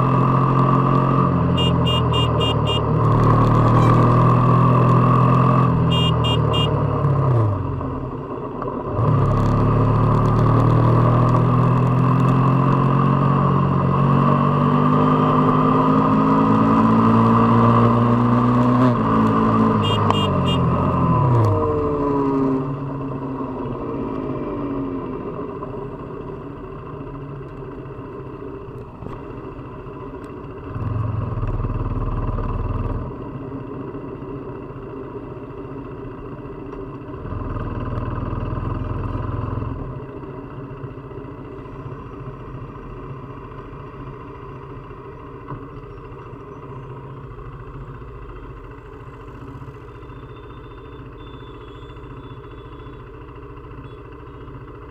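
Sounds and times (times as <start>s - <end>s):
motorcycle engine accelerating: 0.0s - 26.6s.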